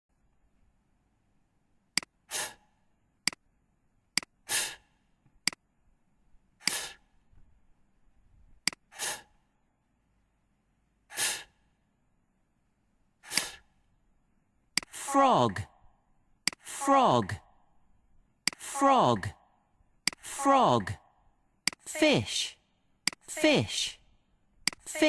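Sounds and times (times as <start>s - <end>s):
person making breathy f sound: 2.3s - 2.8s, 4.4s - 5.0s, 6.6s - 7.1s, 8.9s - 9.4s, 11.1s - 11.7s, 13.2s - 13.7s
short sharp clicks: 13.3s - 13.6s.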